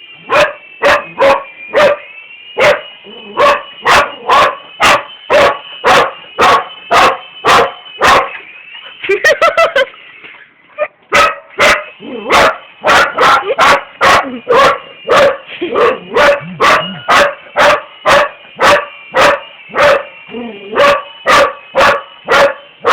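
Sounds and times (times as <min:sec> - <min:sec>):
dog barking: 0:00.2 - 0:08.4, 0:11.1 - 0:22.9
toy helicopter motor whine: 0:02.9 - 0:05.3, 0:12.0 - 0:17.6, 0:19.5 - 0:21.2.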